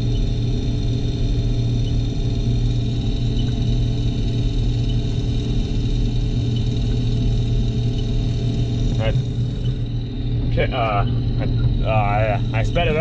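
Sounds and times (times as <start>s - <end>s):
combine harvester drone: 0.0s - 13.0s.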